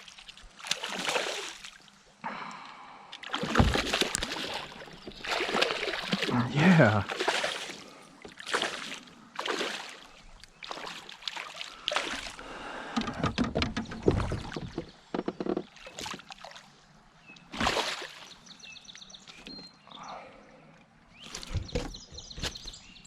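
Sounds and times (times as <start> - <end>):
water splashing and sloshing: 0.0 - 19.6
knocks against kayak hull: 13.0 - 15.7.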